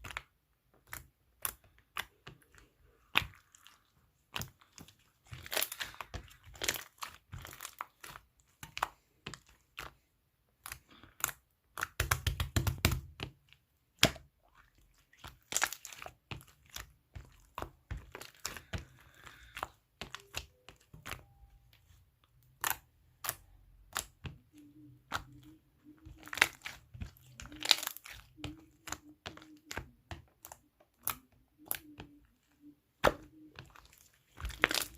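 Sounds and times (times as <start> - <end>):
slime crackling: 0.0 - 34.9
slime clicking and popping: 10.6 - 13.4, 22.3 - 32.2, 33.0 - 34.9.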